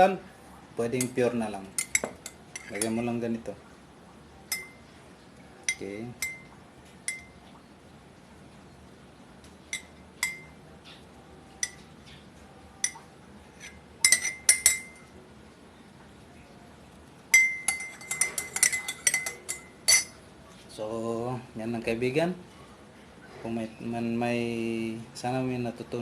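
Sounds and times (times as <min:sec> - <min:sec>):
spoon clinking against glass: 0:01.0 - 0:03.1, 0:04.5 - 0:04.8, 0:05.6 - 0:06.5, 0:07.1 - 0:07.4, 0:09.7 - 0:10.6, 0:11.6 - 0:11.9, 0:12.8 - 0:15.1, 0:17.3 - 0:20.2.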